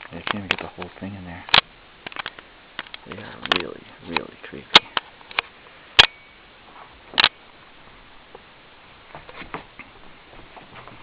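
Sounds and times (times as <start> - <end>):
sharp click: 1.5 - 6.3.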